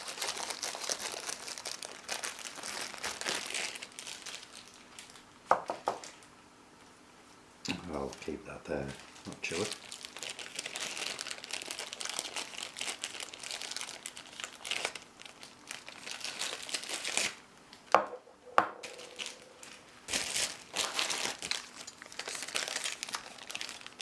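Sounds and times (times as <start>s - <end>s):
packaging crinkling and rustling: 0.0s - 5.3s, 7.9s - 17.9s, 18.7s - 24.0s.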